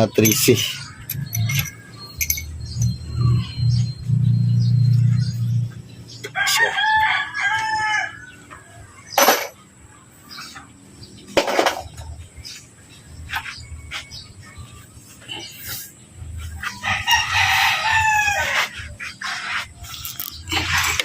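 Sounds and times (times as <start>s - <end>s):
rooster crowing: 6.4s - 8.8s, 16.8s - 18.9s.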